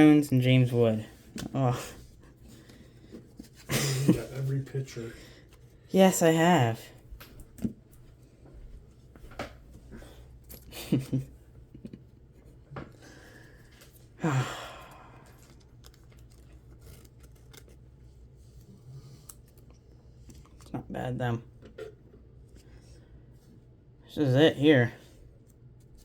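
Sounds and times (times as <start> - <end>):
cards rustling: 14.8 - 20.7
card pack wrapper crinkling: 15.2 - 18.3.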